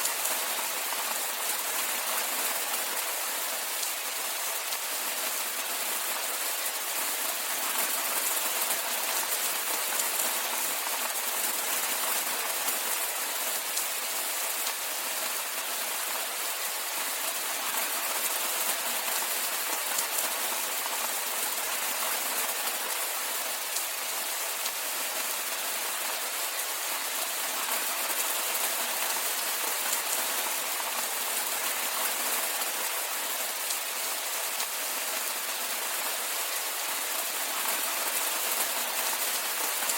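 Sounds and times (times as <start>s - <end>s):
rain pattering: 0.0s - 39.9s.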